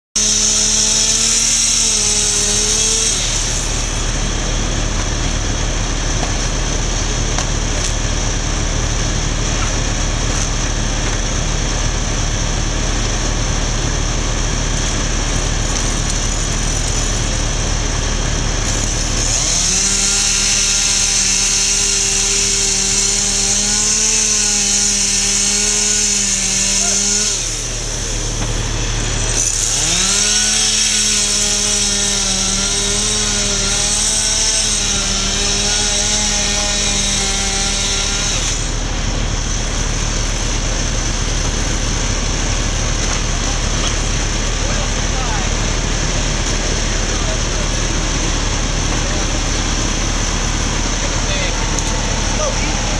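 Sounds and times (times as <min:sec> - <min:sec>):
gas-powered saw cutting: 0:00.2 - 0:52.9
low engine hum: 0:38.7 - 0:52.9.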